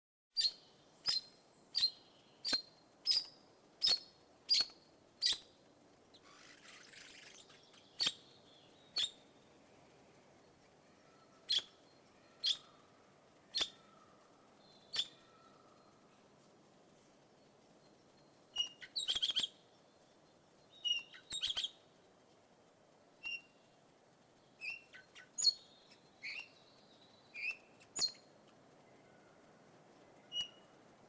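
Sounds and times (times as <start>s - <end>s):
soft hiss: 0.4s - 31.0s
parakeet chirping: 6.2s - 8.2s.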